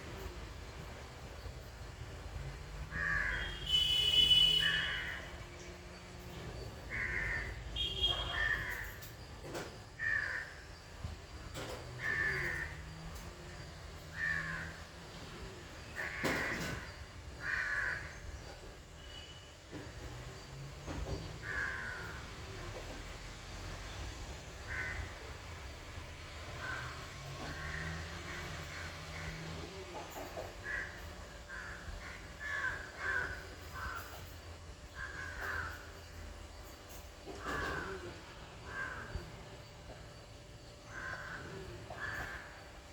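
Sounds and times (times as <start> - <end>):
crows cawing: 2.8 - 5.4, 6.8 - 10.8, 11.6 - 19.3, 21.2 - 23.0, 24.6 - 25.4, 26.4 - 36.2, 36.9 - 40.0, 40.8 - 42.8.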